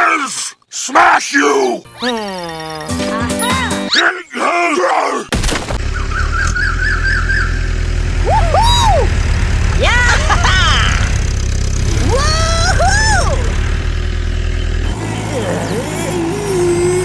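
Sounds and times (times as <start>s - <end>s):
small engine rumbling: 5.3s - 17.0s
chirp-like tones: 13.0s - 17.0s.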